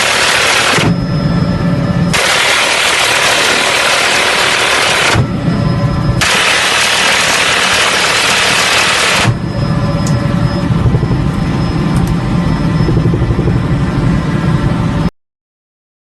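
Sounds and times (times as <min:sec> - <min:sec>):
minigun firing: 0:00.0 - 0:01.0, 0:02.1 - 0:05.3, 0:06.2 - 0:09.4
helicopter turbine whine and rotor: 0:00.0 - 0:15.1.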